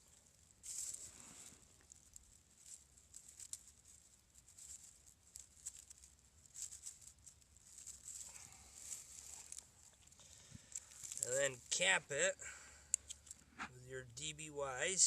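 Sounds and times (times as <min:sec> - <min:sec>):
faint rustling: 0:00.0 - 0:15.0
small wire clicks: 0:09.3 - 0:11.3, 0:12.8 - 0:13.4.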